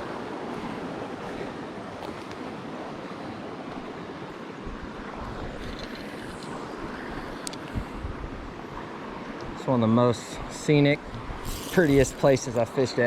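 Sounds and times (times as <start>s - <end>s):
creek water running over rocks: 0.0s - 7.8s, 8.6s - 13.0s
wind buffeting microphone: 0.0s - 9.6s, 10.4s - 12.6s.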